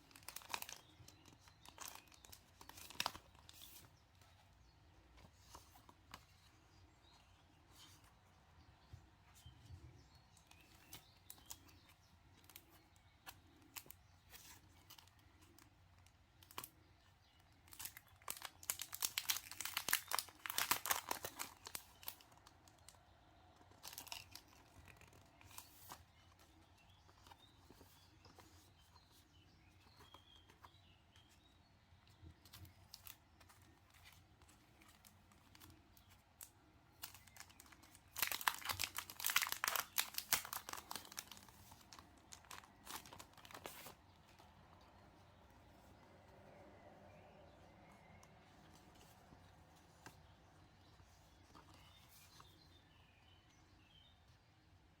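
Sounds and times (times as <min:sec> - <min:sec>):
packaging crinkling and tearing: 0:00.0 - 0:03.8, 0:17.7 - 0:22.9, 0:23.7 - 0:26.0, 0:37.0 - 0:44.4
faint bird chirps: 0:19.6 - 0:55.0.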